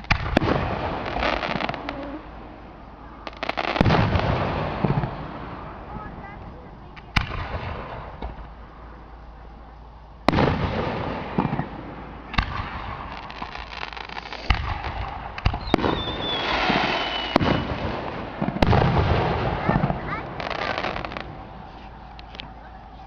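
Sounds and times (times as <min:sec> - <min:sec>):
fireworks bangs: 0:00.0 - 0:23.0
fireworks crackling: 0:00.0 - 0:23.0
falling whistle: 0:15.6 - 0:17.4.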